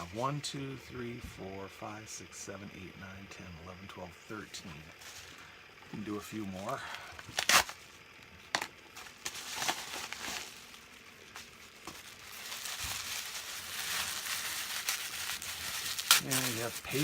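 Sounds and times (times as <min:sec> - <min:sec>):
wrapping crinkling and rustling: 0:08.9 - 0:17.0.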